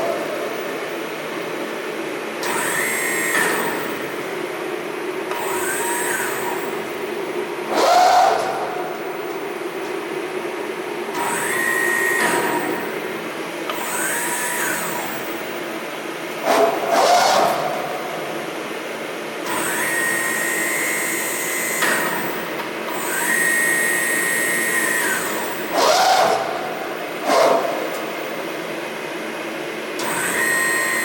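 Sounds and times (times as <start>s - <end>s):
press brake servo whine: 30.0s - 31.0s.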